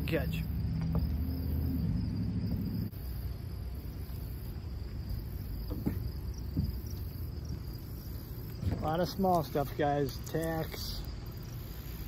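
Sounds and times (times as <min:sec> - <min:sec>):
insect chirring: 0:00.0 - 0:12.0
low outdoor rumble: 0:00.0 - 0:12.0.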